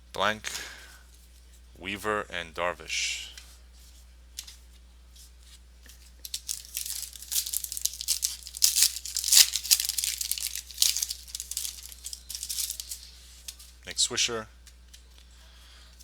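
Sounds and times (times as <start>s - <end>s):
wrapper tearing and crinkling: 6.2s - 13.7s.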